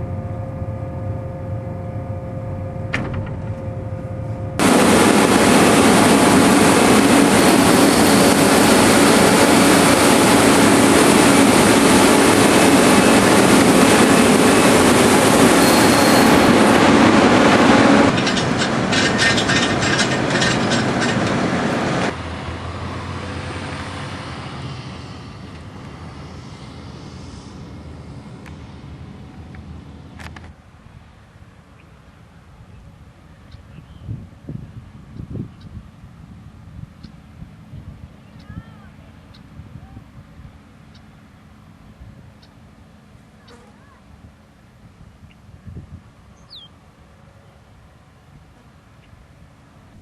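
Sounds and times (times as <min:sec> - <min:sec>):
combine harvester running: 0:00.0 - 0:32.3
low mechanical rumble: 0:00.0 - 0:50.0.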